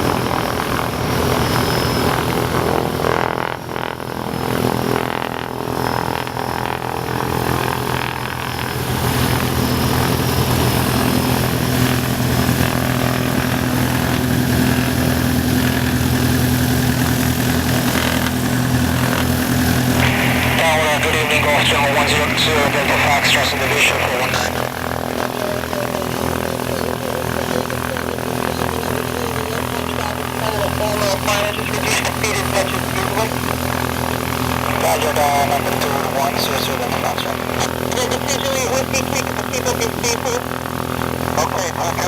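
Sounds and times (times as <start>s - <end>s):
propeller aircraft engine droning: 0.0s - 42.0s.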